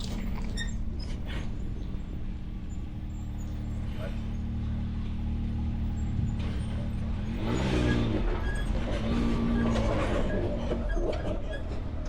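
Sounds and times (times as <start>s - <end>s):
off-road vehicle engine revving: 2.6s - 11.8s.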